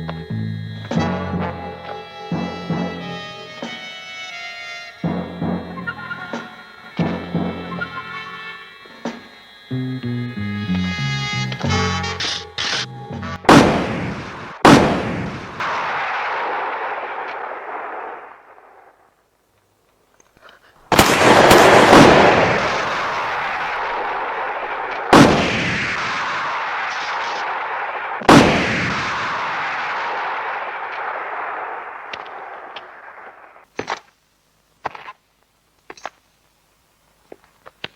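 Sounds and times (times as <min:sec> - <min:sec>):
gunshots with echoing tail: 0:13.4 - 0:18.6, 0:20.9 - 0:33.6.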